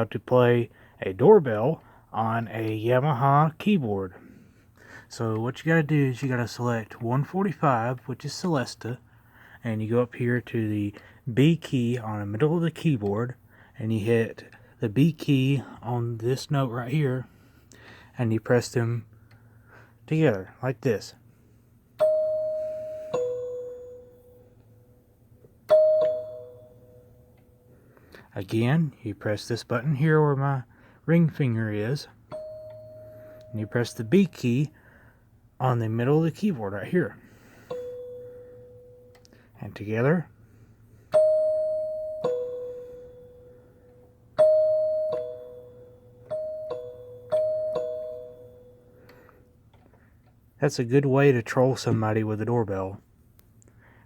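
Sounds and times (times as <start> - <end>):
keyboard celesta doorbell chime: 22.0 - 25.0, 25.6 - 27.7, 32.2 - 34.7, 37.4 - 39.4, 41.1 - 49.4.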